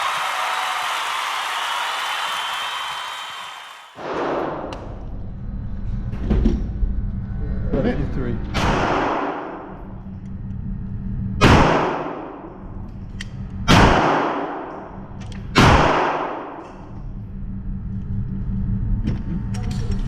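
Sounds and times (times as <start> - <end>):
steady low hum: 4.3 - 20.0
gunshots with echo: 8.6 - 9.8, 11.4 - 12.6, 13.7 - 16.9.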